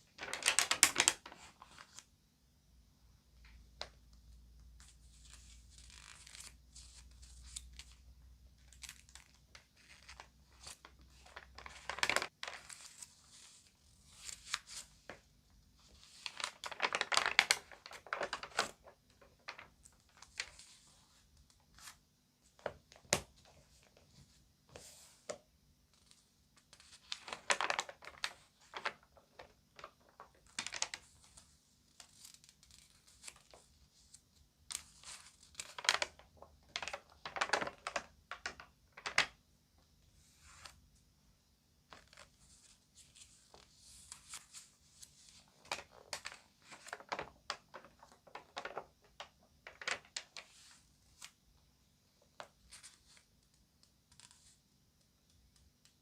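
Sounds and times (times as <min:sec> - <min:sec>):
magazine pages crinkling: 0:00.1 - 0:02.1, 0:04.8 - 0:15.2, 0:15.8 - 0:20.9, 0:26.0 - 0:39.4, 0:41.9 - 0:51.4.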